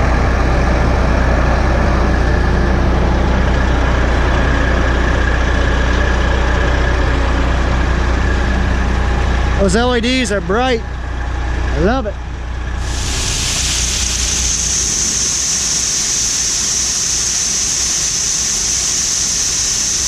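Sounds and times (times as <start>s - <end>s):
diesel engines drone: 0.0s - 20.0s
faint high whine: 12.7s - 20.0s.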